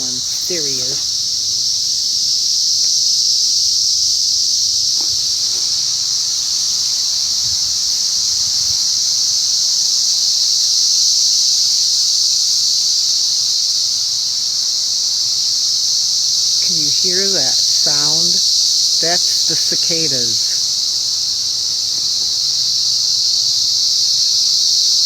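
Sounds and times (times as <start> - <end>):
cicadas buzzing: 0.0 - 25.0.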